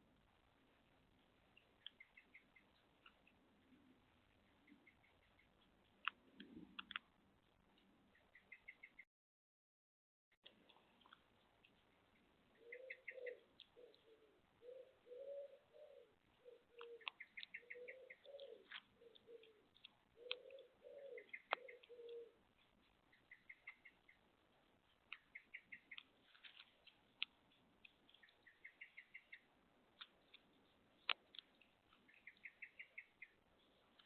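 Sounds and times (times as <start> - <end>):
small bird chirping trills: 0.0 - 7.0, 7.7 - 9.1, 10.5 - 34.0
pigeon cooing: 12.6 - 22.4.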